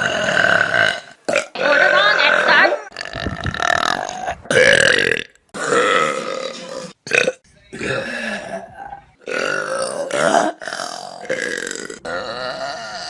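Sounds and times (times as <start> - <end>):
loud burps: 0.0 - 13.0.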